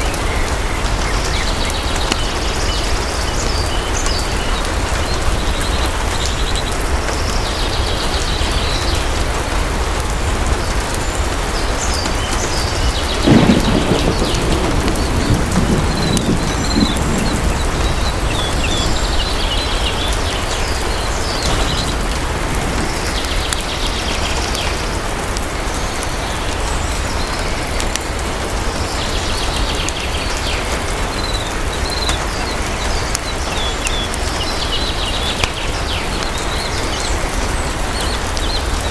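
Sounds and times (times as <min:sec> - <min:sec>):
heavy rain: 0:00.0 - 0:38.9
thunder rolling: 0:12.6 - 0:25.7.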